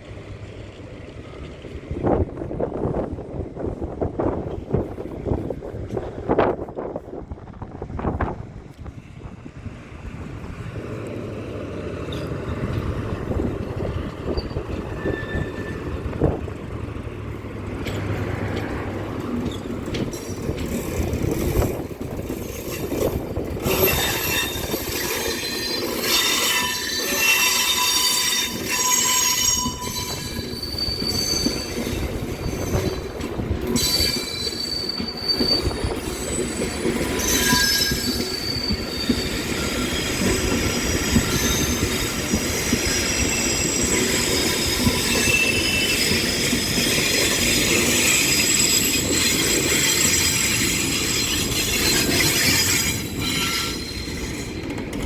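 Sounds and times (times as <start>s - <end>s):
train rumbling: 0.0s - 55.0s
wheels squealing on rails: 10.3s - 16.6s, 17.4s - 55.0s.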